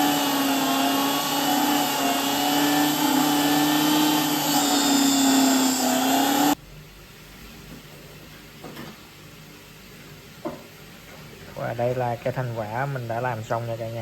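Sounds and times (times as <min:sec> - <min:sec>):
polishing motor humming: 0:00.0 - 0:06.6.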